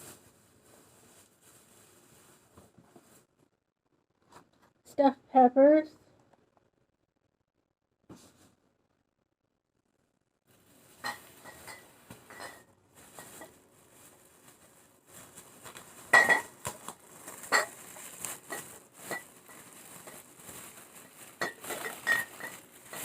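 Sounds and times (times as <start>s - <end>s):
grocery items knocking and clinking: 16.0s - 20.3s, 21.2s - 23.0s.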